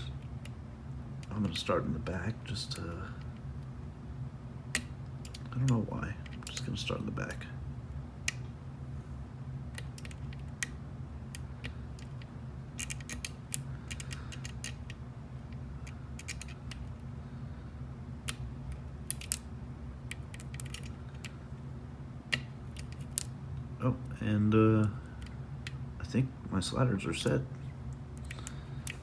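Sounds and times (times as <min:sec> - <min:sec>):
steady low hum: 0:00.0 - 0:29.0
lock pick clicking: 0:04.8 - 0:06.7, 0:09.8 - 0:15.0, 0:15.8 - 0:16.9, 0:19.1 - 0:19.4, 0:20.1 - 0:21.0.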